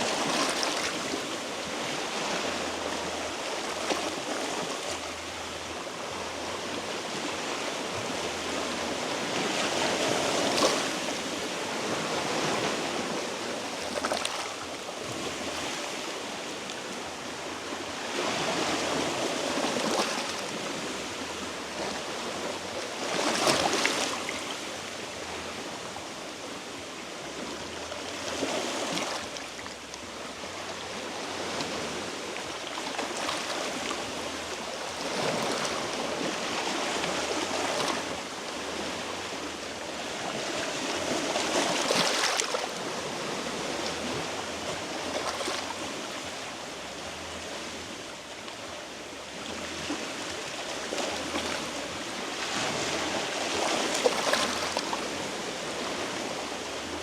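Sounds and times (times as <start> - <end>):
waves splashing against rocks: 18.1 - 21.0, 40.1 - 46.3, 49.8 - 57.0.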